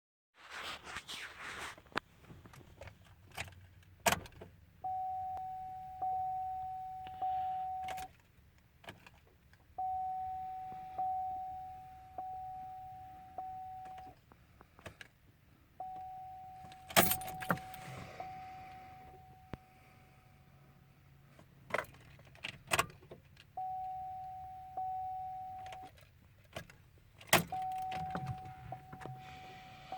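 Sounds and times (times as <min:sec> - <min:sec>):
warning chime dinging: 0:09.8 - 0:14.1, 0:15.8 - 0:19.6, 0:27.5 - 0:29.9
keys jangling in ignition: 0:16.7 - 0:18.0.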